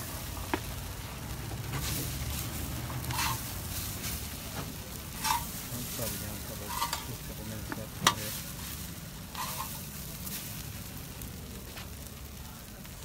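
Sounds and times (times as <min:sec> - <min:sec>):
hash browns sizzling in a pan: 0:00.0 - 0:13.0
scraping stirring strokes: 0:01.6 - 0:11.0.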